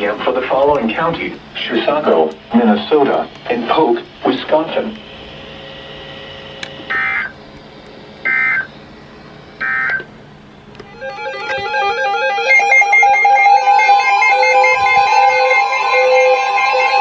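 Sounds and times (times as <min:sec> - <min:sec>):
warbling digital data bursts: 0:03.7 - 0:09.0
music with repeating melody: 0:10.9 - 0:17.0.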